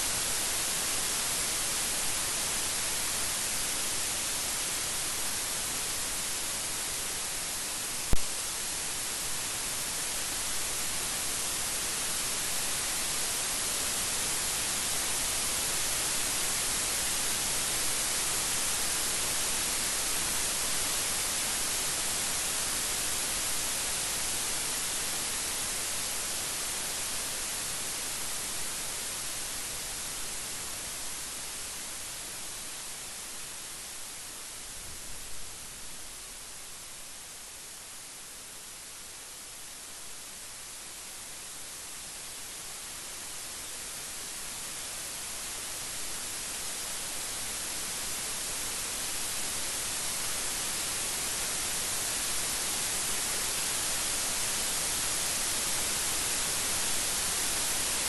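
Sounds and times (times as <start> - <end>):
steady rain: 0.0 - 58.0.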